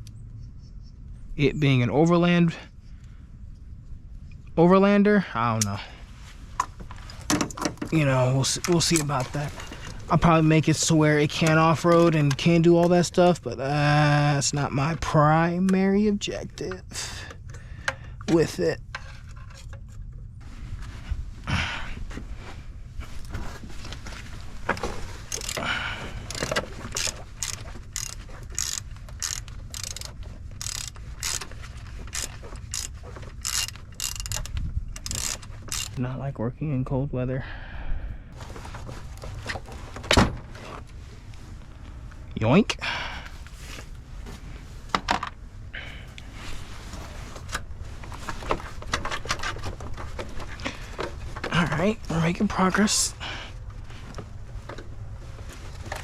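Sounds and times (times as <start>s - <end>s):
metal clicks and scrapes: 24.7s - 36.0s
metal tools clinking: 24.8s - 36.0s
ratchet wrench clicking: 25.3s - 25.6s, 26.2s - 31.5s, 32.1s - 36.0s.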